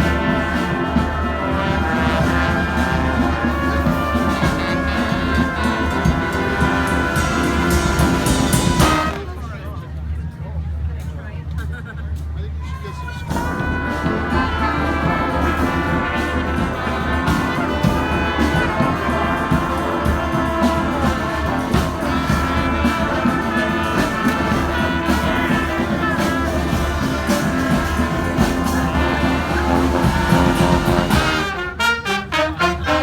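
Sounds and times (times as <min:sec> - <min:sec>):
sharp percussive hits: 0:00.0 - 0:09.4
brass band playing: 0:00.0 - 0:09.8, 0:13.3 - 0:33.0.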